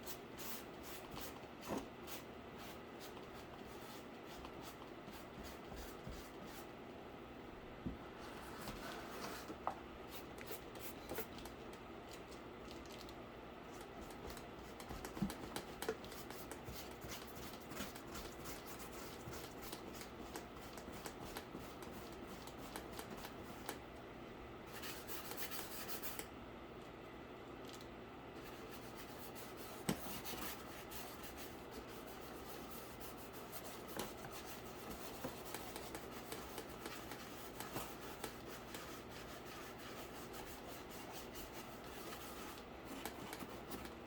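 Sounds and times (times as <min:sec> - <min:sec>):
paintbrush scratching on cardboard: 0:28.4 - 0:43.9.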